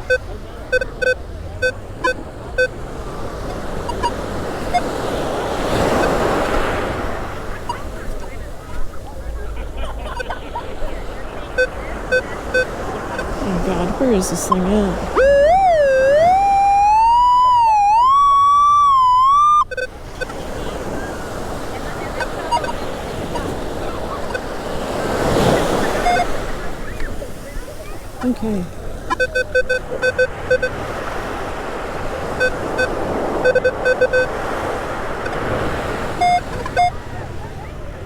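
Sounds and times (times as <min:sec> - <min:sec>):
metal detector tone: 0:00.0 - 0:02.7, 0:03.9 - 0:04.9, 0:14.3 - 0:20.3, 0:26.0 - 0:26.4, 0:29.1 - 0:30.8, 0:32.4 - 0:34.3, 0:36.2 - 0:36.9
surf: 0:00.0 - 0:38.0.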